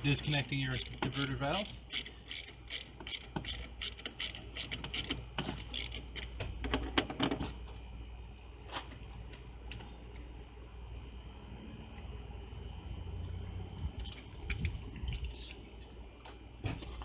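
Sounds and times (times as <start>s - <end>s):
ratchet wrench clicking: 0.2s - 6.3s, 14.0s - 15.5s.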